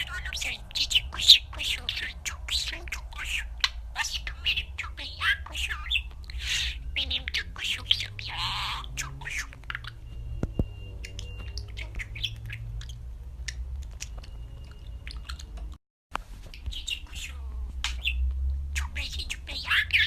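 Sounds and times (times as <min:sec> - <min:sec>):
budgerigar chattering: 0:00.0 - 0:10.0, 0:11.0 - 0:13.7, 0:18.8 - 0:20.0.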